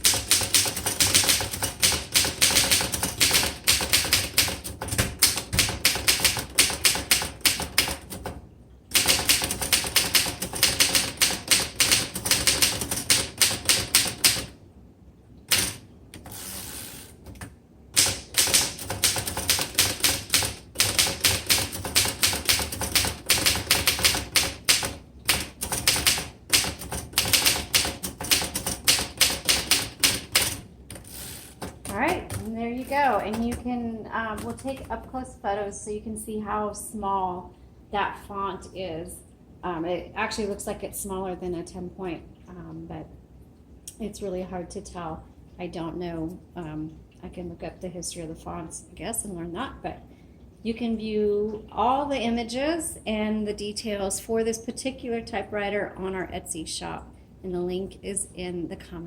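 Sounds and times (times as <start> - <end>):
manual typewriter typing: 0.0 - 14.6, 15.5 - 33.7, 34.3 - 35.0.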